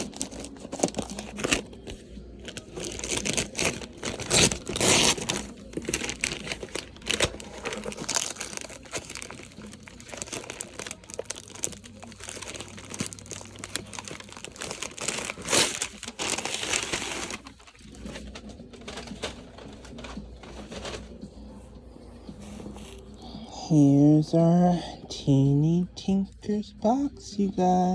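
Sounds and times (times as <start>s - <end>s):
packing material crinkling: 0.0s - 21.3s.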